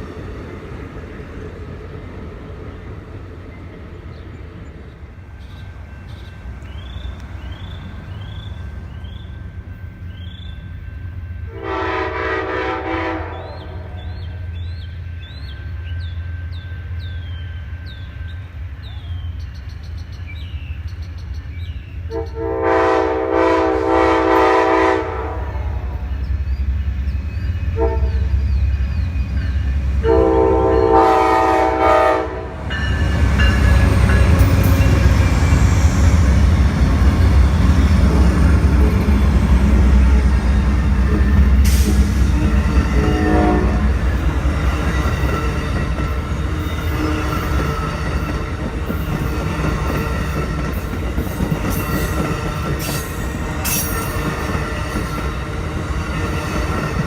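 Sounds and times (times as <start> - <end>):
train rumble and wheel clatter: 0.0 - 57.0
train horn blasts: 11.4 - 14.4, 22.1 - 26.2, 27.7 - 28.4, 29.9 - 35.5, 39.9 - 47.9.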